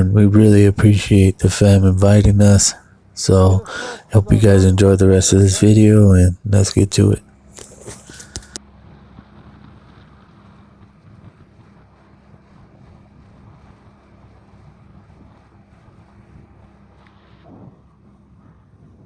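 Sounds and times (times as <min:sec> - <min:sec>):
boat engine low rumble: 0:00.0 - 0:19.0
wind buffeting microphone: 0:08.0 - 0:19.0.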